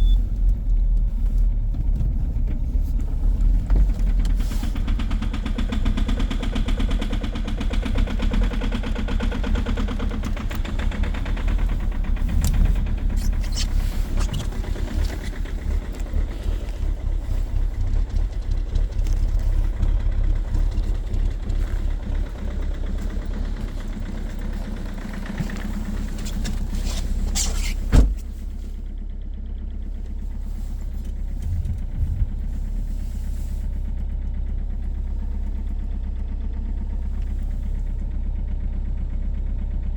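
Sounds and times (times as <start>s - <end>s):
diesel engine idling with knocking: 0.0s - 39.9s.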